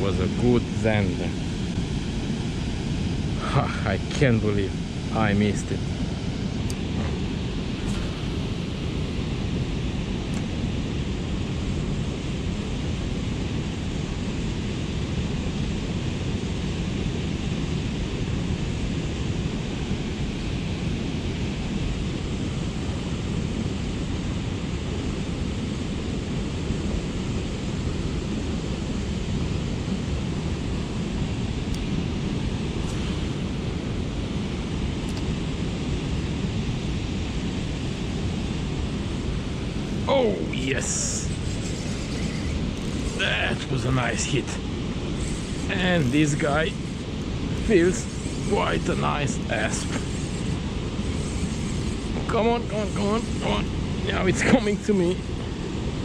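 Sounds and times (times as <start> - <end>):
fast river current rushing: 35.4 - 56.0.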